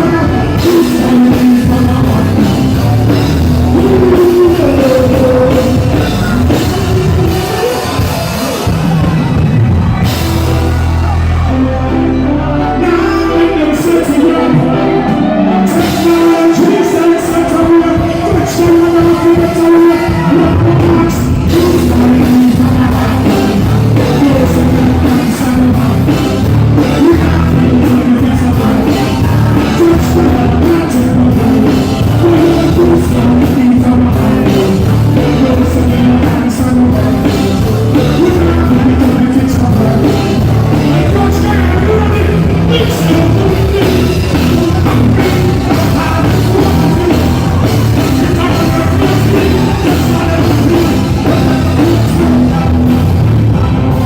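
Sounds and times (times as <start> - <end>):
drums: 0.0 - 54.0
live band music: 0.0 - 54.0
person singing: 0.0 - 54.0.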